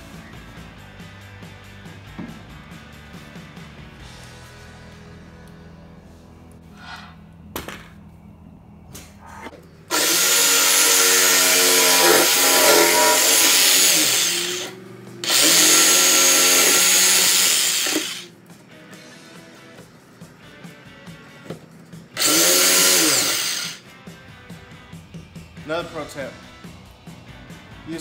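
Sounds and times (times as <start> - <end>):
jigsaw cutting wood: 9.9 - 18.3, 22.2 - 23.8.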